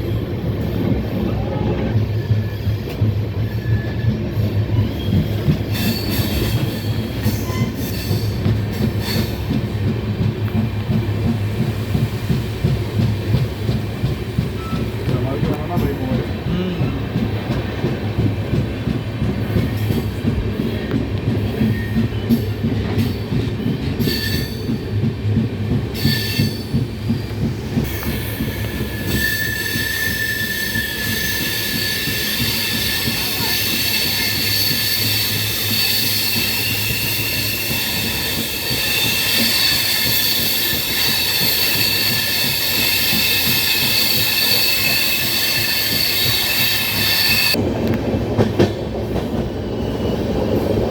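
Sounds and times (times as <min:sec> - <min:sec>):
train rumbling on rails: 0:00.0 - 0:50.9
high-pitched wheel squeal: 0:28.8 - 0:47.6.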